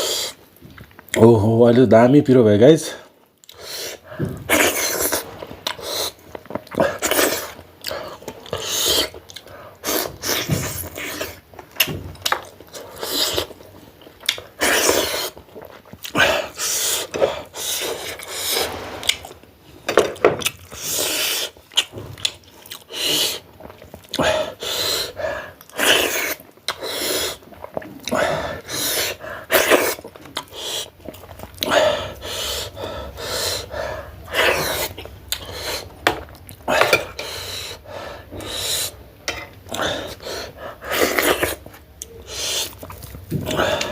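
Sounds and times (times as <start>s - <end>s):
chewing and mouth noises: 3.3s - 19.3s, 19.9s - 33.7s, 34.3s - 43.9s
panting breaths: 31.6s - 35.9s, 39.7s - 41.2s.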